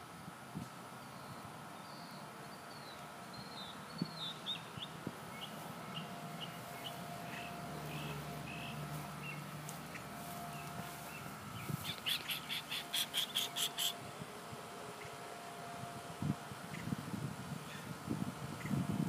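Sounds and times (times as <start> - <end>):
bird chirping: 1.0 - 14.0
low hum: 2.1 - 19.0.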